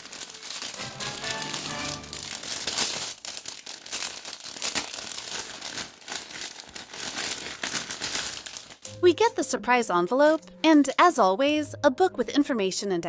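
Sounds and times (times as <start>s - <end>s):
packet crinkling and tearing: 0.0s - 9.0s.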